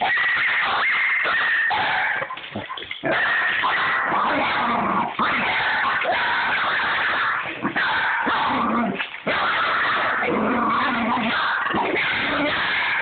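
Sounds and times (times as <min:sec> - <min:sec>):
dog barking and growling: 0:00.0 - 0:13.0.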